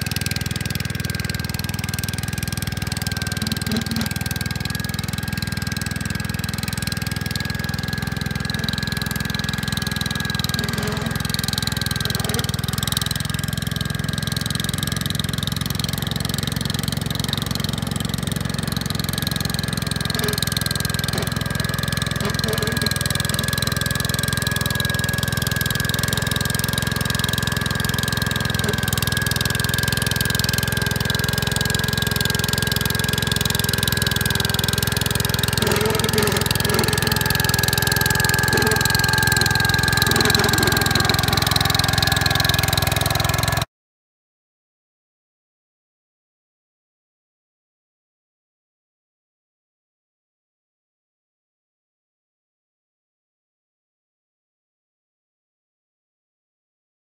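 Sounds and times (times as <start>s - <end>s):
tractor engine running: 0.0s - 43.7s.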